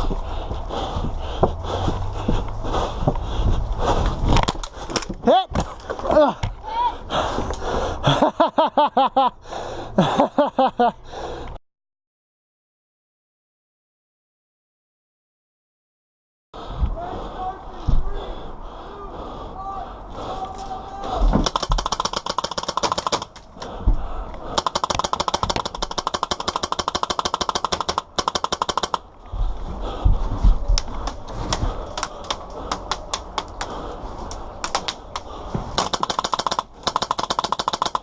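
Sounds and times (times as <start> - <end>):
airsoft guns firing rapid bursts: 21.4 - 23.4, 24.6 - 29.0, 35.8 - 38.0.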